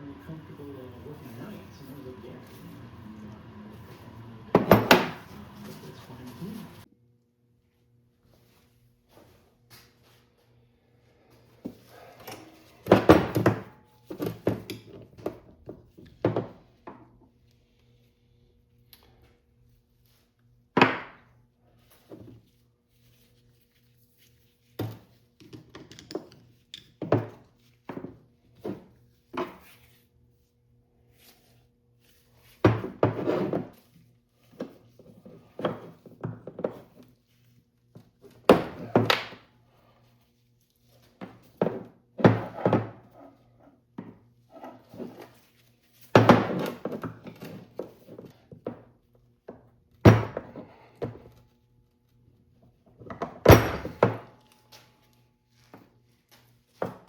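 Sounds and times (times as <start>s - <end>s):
tools and metal parts clunking: 25.0s - 27.4s.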